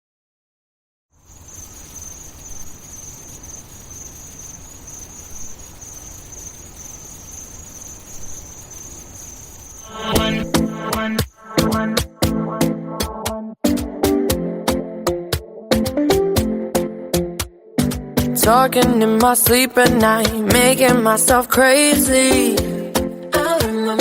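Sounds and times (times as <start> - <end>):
crickets chirping: 1.2 - 11.8.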